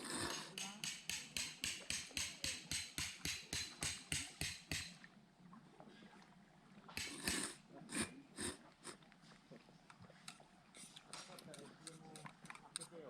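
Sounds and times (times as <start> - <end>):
hammer striking: 0.2 - 4.9, 7.0 - 7.5.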